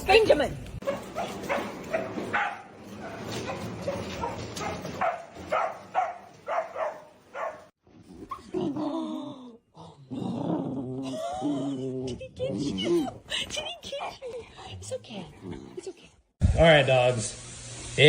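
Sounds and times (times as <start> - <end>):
dog barking: 0.8 - 7.7.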